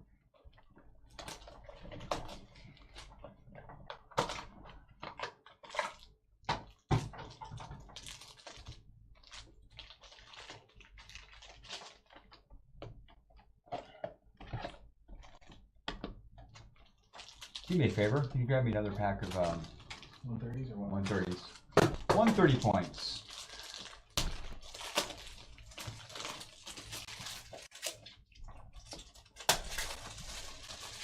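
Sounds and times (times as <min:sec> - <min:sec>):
packaging crinkling and tearing: 0:07.1 - 0:12.5, 0:16.5 - 0:31.0.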